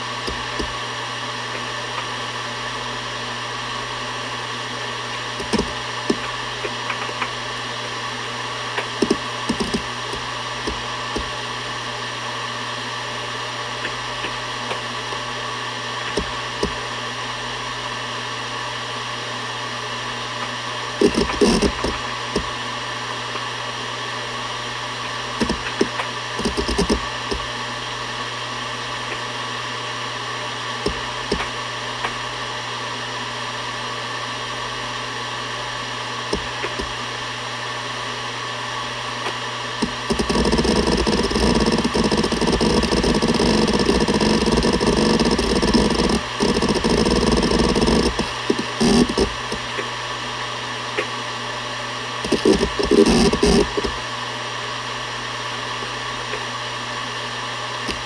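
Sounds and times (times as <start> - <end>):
hard drive seek clicks: 0.0 - 2.2, 5.0 - 12.0, 13.8 - 17.0, 20.4 - 23.5, 24.9 - 27.8, 30.7 - 32.3, 36.2 - 37.2, 38.9 - 50.2, 52.2 - 54.1, 57.8 - 58.0
hard drive hum and whine: 0.0 - 58.0.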